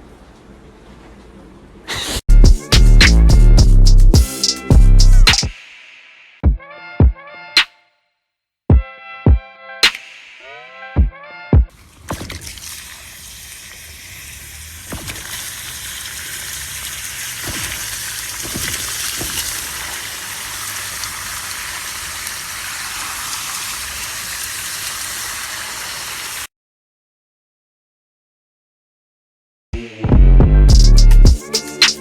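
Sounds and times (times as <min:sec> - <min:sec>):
water rushing and sloshing: 0:11.7 - 0:26.5
sharp thumps: 0:17.4 - 0:19.8.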